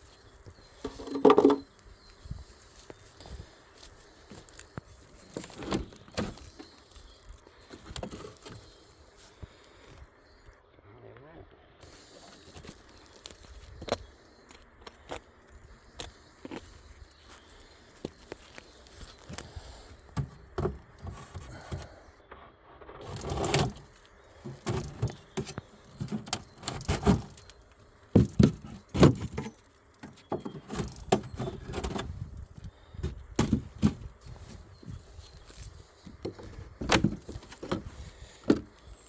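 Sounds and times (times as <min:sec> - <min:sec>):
wooden beehive frames knocking: 0:00.8 - 0:01.7, 0:28.2 - 0:32.2, 0:33.0 - 0:35.1, 0:36.1 - 0:38.8.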